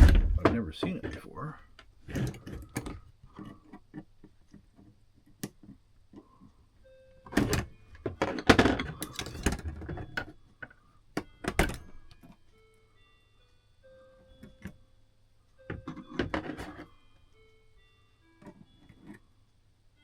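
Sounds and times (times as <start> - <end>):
metal rattling: 0.0 - 0.6.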